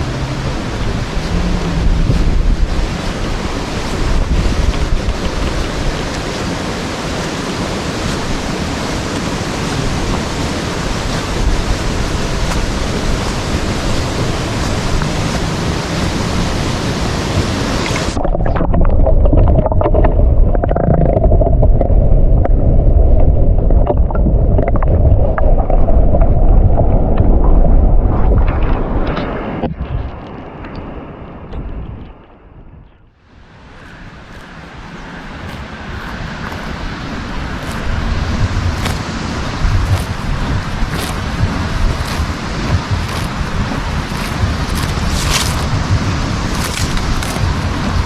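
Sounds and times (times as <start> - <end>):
waterfall roaring: 0.0 - 18.7, 33.3 - 48.0
wind buffeting microphone: 0.0 - 48.0.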